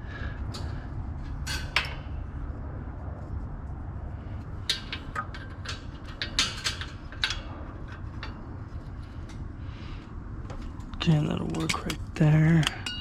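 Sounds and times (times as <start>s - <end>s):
steady low hum: 0.0s - 13.0s
wire basket clicks and clinks: 10.8s - 13.0s.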